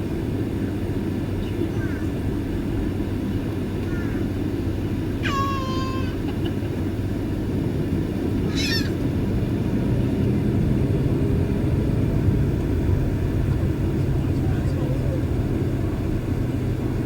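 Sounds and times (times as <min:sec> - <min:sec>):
jet engines rumbling: 0:00.0 - 0:17.0
high-pitched animal calls: 0:08.4 - 0:09.0.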